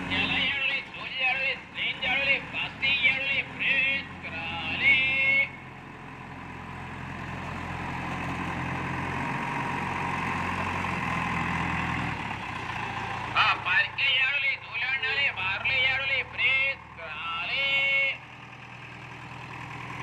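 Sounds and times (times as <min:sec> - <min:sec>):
heavy vehicle engine running: 0:00.0 - 0:20.0
person speaking: 0:13.4 - 0:18.2.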